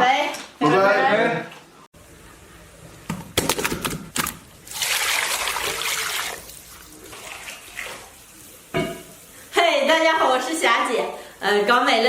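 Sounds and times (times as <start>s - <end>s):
running water splashing: 4.2s - 9.5s.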